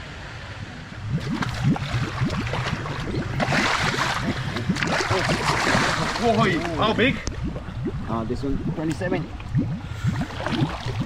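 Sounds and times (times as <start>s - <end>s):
fish thrashing and splashing water: 1.2s - 7.8s, 8.8s - 11.0s.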